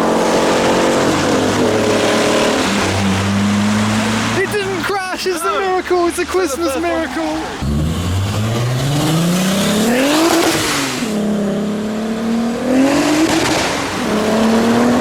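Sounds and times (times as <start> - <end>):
car engine accelerating hard: 0.0 - 5.0, 5.7 - 15.0
wet tyres hissing: 0.0 - 11.4.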